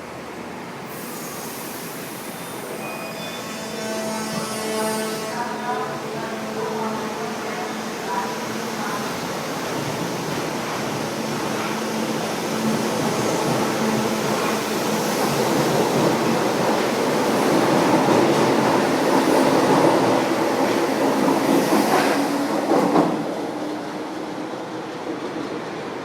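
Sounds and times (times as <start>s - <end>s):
train wheels rumbling on rails: 5.7s - 26.0s.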